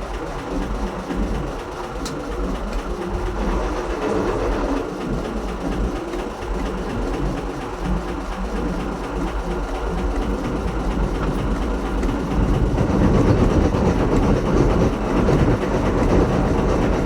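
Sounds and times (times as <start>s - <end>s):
engine rumble with rhythmic clatter: 0.0s - 17.0s.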